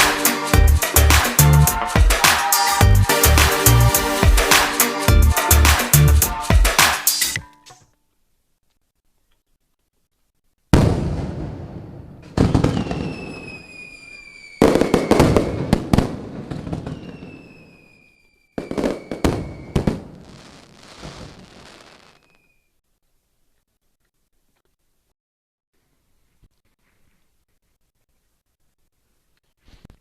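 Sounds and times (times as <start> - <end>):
firework bangs with crackling: 10.7 - 22.4
high whistle sliding down: 12.8 - 15.8, 16.9 - 19.9.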